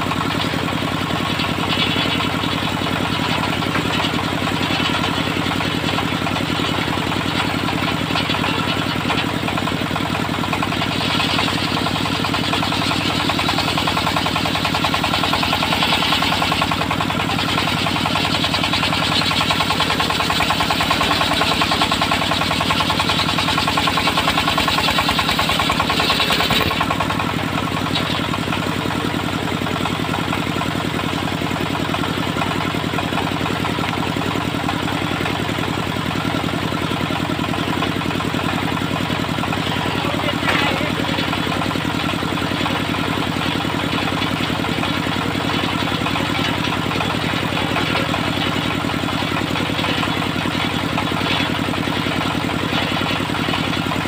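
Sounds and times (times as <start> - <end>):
sawmill engine running: 0.0 - 54.0
saw blade cutting log: 0.2 - 28.5.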